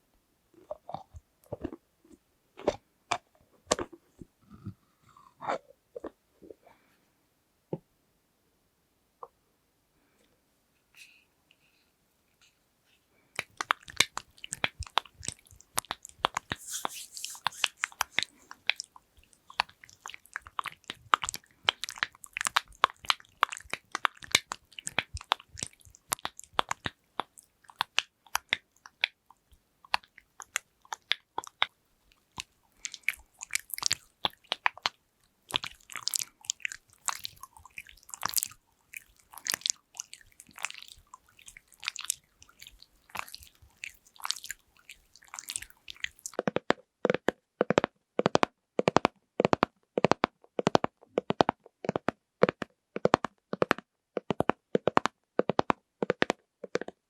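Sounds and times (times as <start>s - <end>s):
scratchy rubbing: 16.3s - 18.6s.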